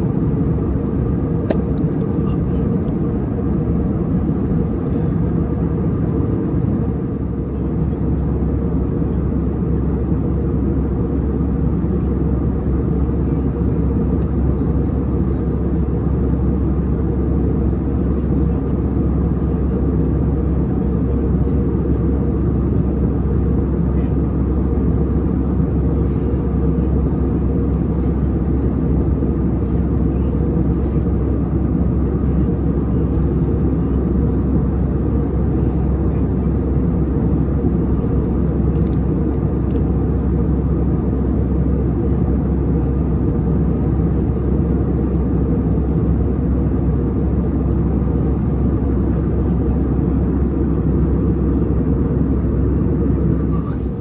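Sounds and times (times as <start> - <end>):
airliner cabin engine drone: 0.0 - 54.0.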